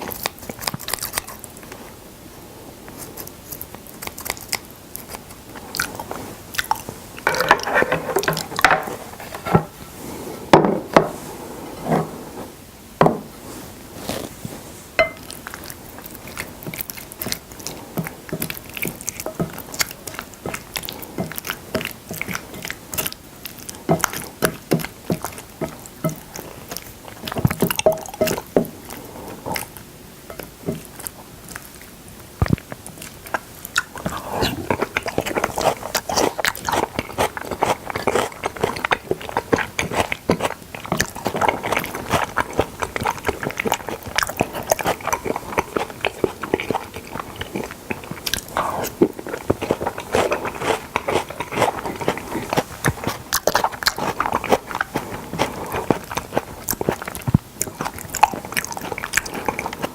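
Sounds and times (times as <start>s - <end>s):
wet chewing and mouth smacks: 0.0s - 2.0s, 2.9s - 9.6s, 15.1s - 59.9s.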